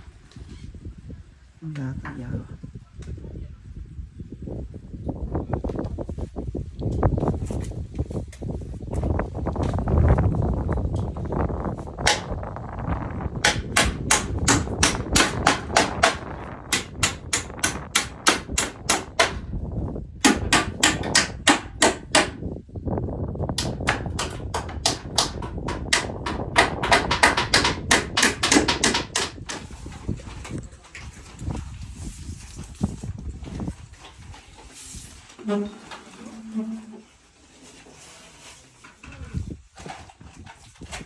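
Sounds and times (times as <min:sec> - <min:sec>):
hammer blows: 0:12.0 - 0:19.6.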